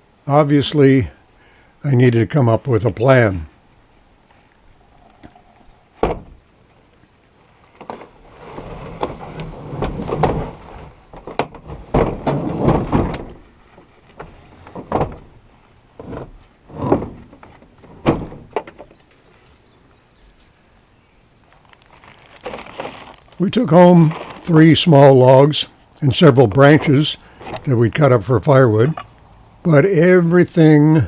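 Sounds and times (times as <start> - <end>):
sharp knocks and thuds: 6.0 - 6.4, 14.2 - 15.4, 16.0 - 18.9
rustling and scraping: 7.5 - 31.0.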